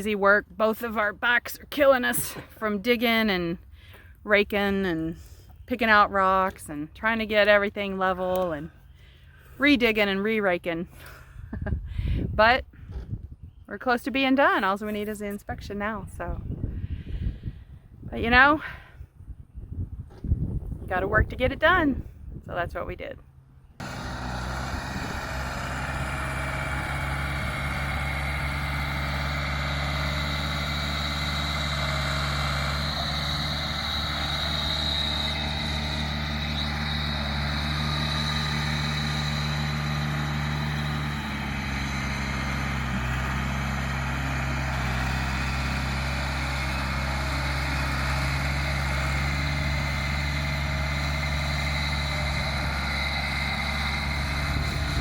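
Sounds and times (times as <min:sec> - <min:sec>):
diesel engine running: 0:23.3 - 0:55.0.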